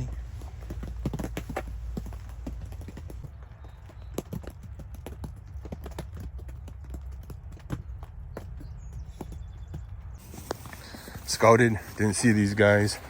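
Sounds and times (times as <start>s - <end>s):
footsteps crunching through snow: 10.2s - 13.0s.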